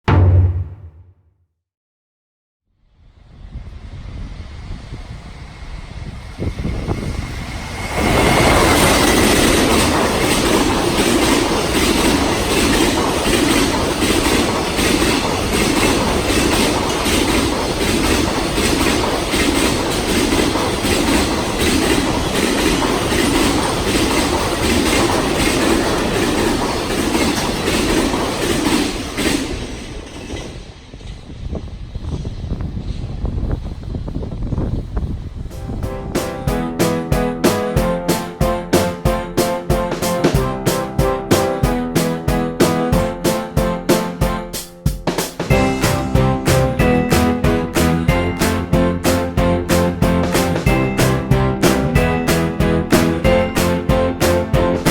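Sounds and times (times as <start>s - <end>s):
freight train wheels clattering: 7.0s - 34.1s, 44.9s - 54.9s.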